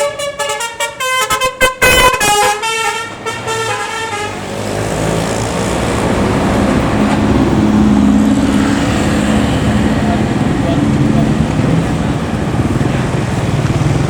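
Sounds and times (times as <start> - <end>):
bus horn tune: 0.0 - 4.5
road noise: 0.0 - 14.0
vehicle engine running: 5.0 - 14.0.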